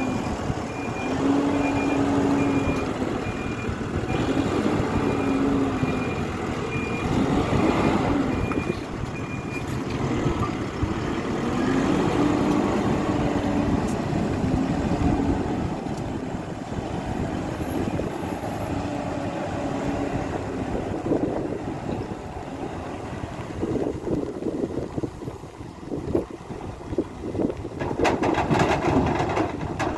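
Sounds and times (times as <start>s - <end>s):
reversing alarm beeping: 0.0s - 4.3s
backhoe diesel engine working: 0.0s - 29.9s.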